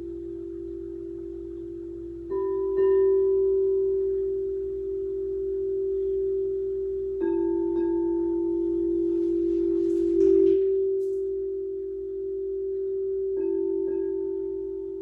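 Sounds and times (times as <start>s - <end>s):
singing bowl strikes: 0.0s - 15.0s
singing bowls ringing: 0.0s - 15.0s.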